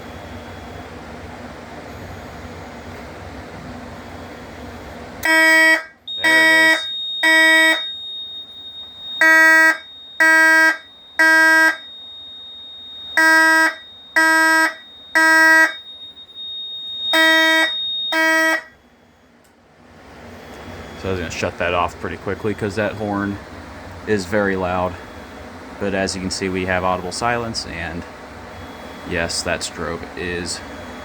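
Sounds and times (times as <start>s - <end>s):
fire alarm horn blasts: 4.0s - 19.4s, 20.2s - 31.0s
steady high-pitched tone: 5.2s - 18.9s, 20.2s - 31.0s.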